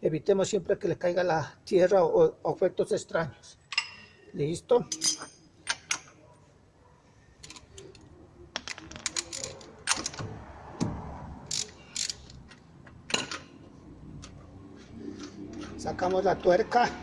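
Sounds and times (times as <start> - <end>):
metallic clicks of hand tools: 8.6 - 10.3, 11.4 - 13.5.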